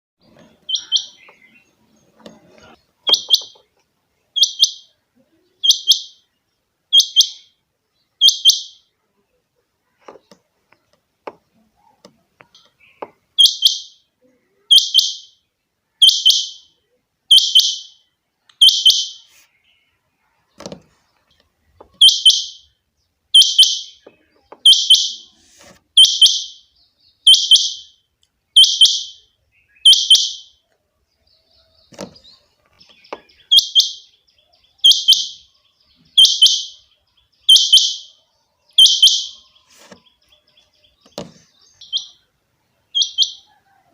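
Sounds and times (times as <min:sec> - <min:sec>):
quail calling: 0:00.6 - 0:01.6, 0:23.4 - 0:26.6, 0:27.2 - 0:27.9, 0:28.6 - 0:30.6, 0:34.7 - 0:36.9, 0:37.5 - 0:40.0, 0:42.9 - 0:43.9.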